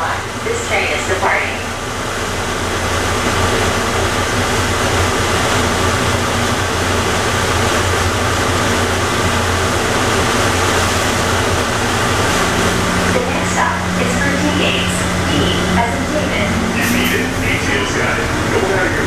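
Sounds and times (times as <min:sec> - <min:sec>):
people mover train rumbling: 0:00.0 - 0:19.0.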